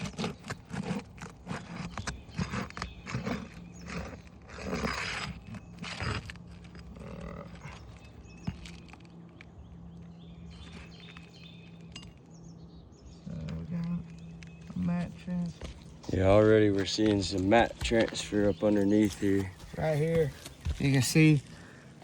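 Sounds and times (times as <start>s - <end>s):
tearing scrapes: 0.0s - 9.2s
shingle scraping and crackling: 0.0s - 22.0s.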